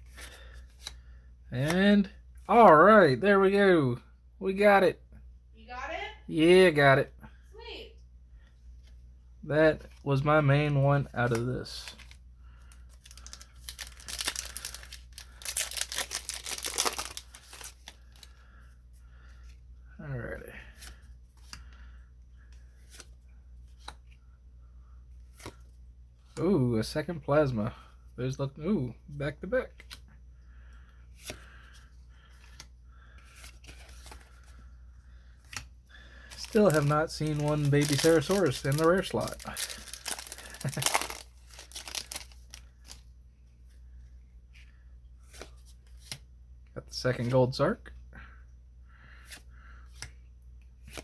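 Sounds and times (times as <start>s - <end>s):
cards rustling: 9.8s - 19.6s, 20.6s - 24.2s, 30.7s - 43.1s, 44.6s - 46.2s
foil wrapper tearing and crinkling: 12.9s - 18.3s, 36.3s - 43.0s.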